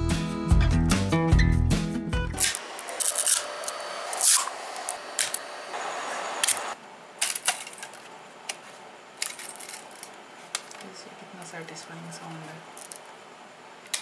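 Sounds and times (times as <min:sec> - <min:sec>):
plastic scraping and crackling: 0:02.4 - 0:05.7, 0:06.4 - 0:11.6, 0:12.3 - 0:13.2.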